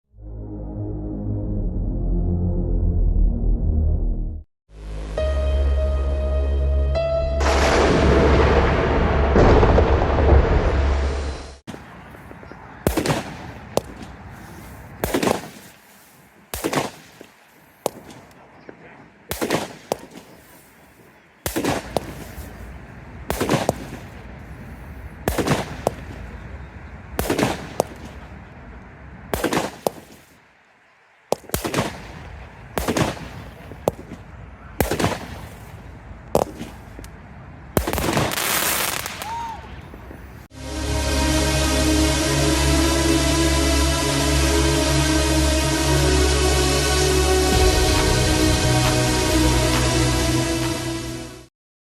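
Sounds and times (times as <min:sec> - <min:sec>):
firework bangs: 0:07.4 - 0:18.4, 0:19.3 - 0:28.4, 0:29.3 - 0:30.4, 0:31.3 - 0:37.1, 0:37.7 - 0:40.4.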